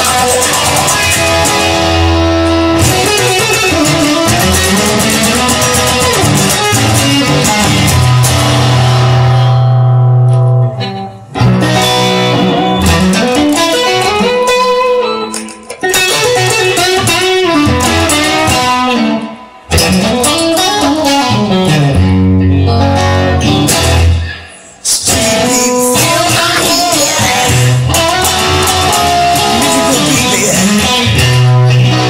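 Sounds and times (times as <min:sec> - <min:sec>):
guitar-led music with bass: 0:00.0 - 0:32.0.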